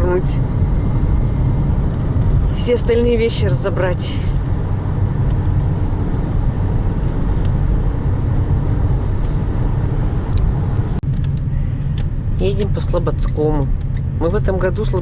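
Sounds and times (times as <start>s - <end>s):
car road and engine rumble: 0.0s - 15.0s.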